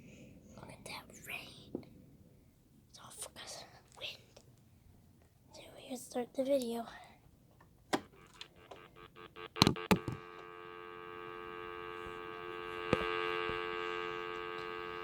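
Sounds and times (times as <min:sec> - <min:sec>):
buzzy electronic ringtone: 0:08.1 - 0:15.0
clicks and taps: 0:09.6 - 0:10.5, 0:12.9 - 0:13.6.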